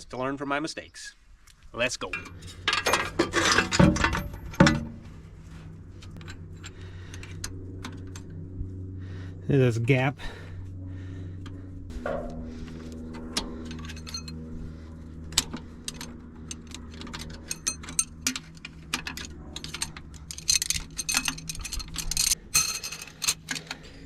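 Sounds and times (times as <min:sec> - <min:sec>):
steady low hum: 0:01.2 - 0:24.0
steel rods clinking and rattling: 0:02.0 - 0:05.0, 0:15.9 - 0:24.0.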